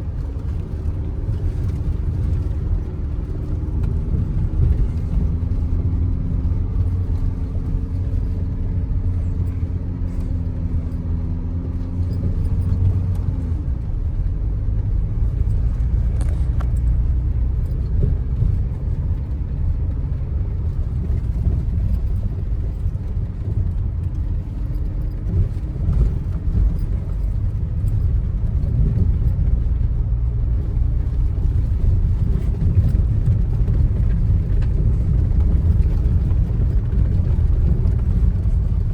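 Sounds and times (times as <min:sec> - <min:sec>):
car engine and tyre rumble: 0:00.0 - 0:38.9.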